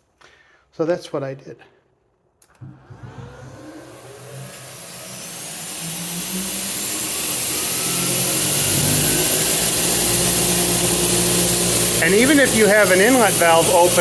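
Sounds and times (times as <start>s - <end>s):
vacuum turbine spinning: 2.6s - 14.0s.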